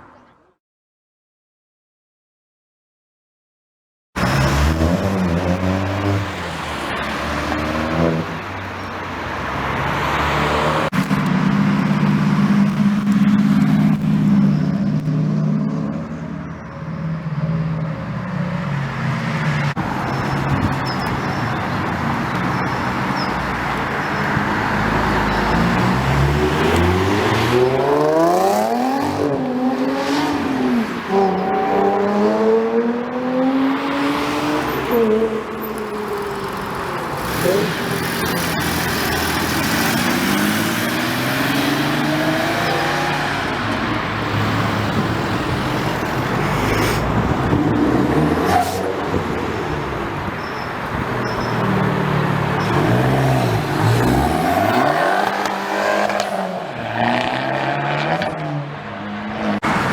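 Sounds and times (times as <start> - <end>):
car engine revving and accelerating: 4.2 - 8.6, 22.1 - 35.7, 36.7 - 50.3, 50.9 - 59.9.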